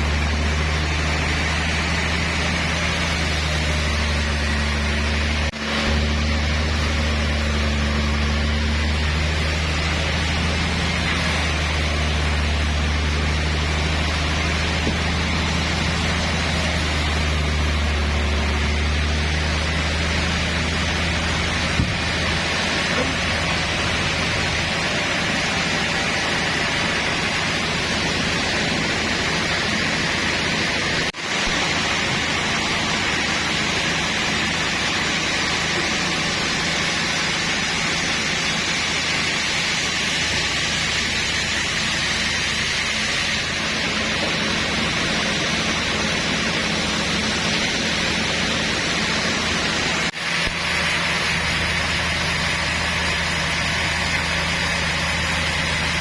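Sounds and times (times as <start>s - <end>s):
low engine hum: 0.0s - 36.8s
sawmill machinery hiss: 0.0s - 56.0s.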